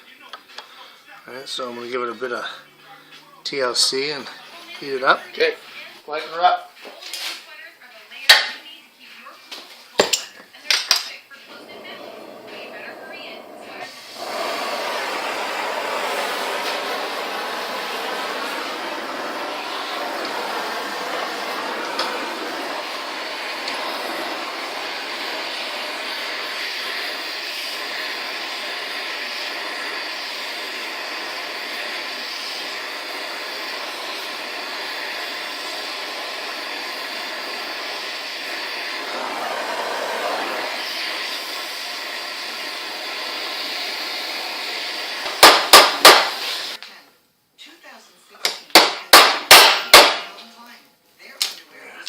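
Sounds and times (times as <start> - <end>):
cutting torch flame hissing: 0.5 - 7.5, 9.6 - 46.8, 48.7 - 50.4
hammer blows on hot metal: 45.2 - 46.4, 48.8 - 50.4.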